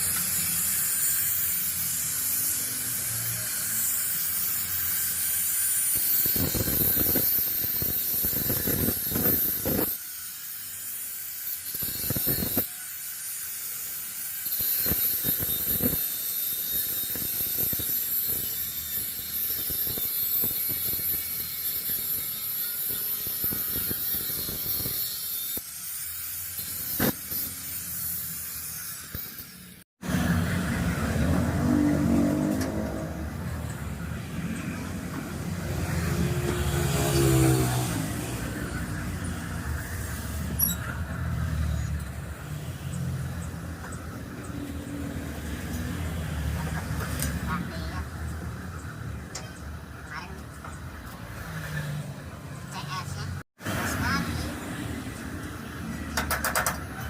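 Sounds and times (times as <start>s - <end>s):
high-speed power tool whining: 0.0s - 29.4s, 32.1s - 42.1s.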